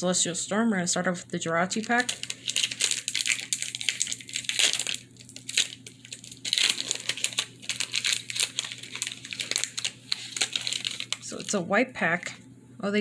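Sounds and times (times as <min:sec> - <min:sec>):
foil wrapper crinkling and tearing: 0:01.8 - 0:11.6.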